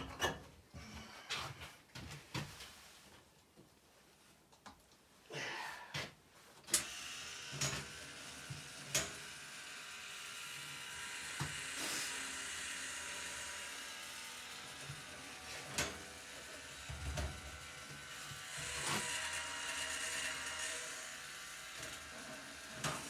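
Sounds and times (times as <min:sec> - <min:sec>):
small electric motor running: 0:06.8 - 0:23.0.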